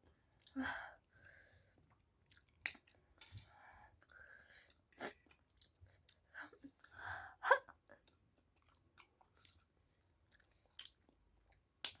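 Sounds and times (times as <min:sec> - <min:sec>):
chewing noodles: 0:07.8 - 0:12.0.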